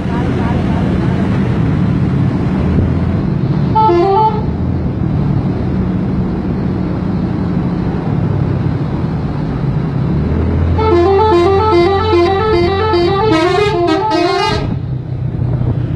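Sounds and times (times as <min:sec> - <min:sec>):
vehicle engine rumbling: 0:00.0 - 0:15.9
multi-note horn tune: 0:03.8 - 0:04.5, 0:10.8 - 0:14.8.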